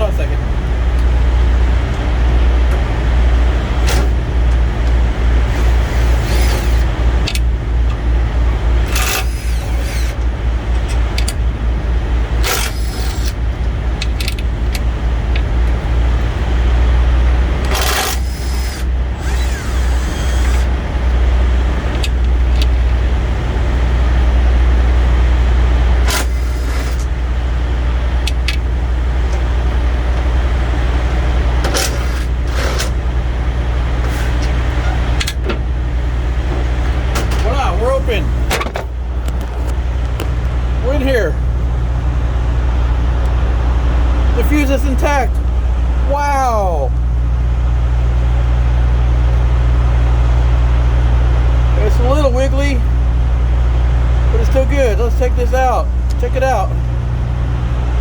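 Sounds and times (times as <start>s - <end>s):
vehicle engine idling: 0.0s - 58.0s
tools and parts clattering: 31.6s - 33.0s.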